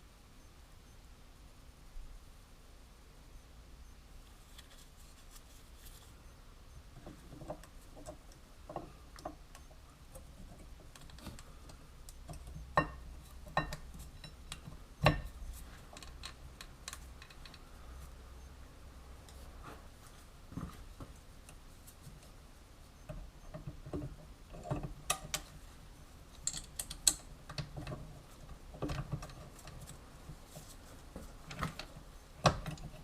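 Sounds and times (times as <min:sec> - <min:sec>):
light clicks and knocks: 0:07.0 - 0:17.7.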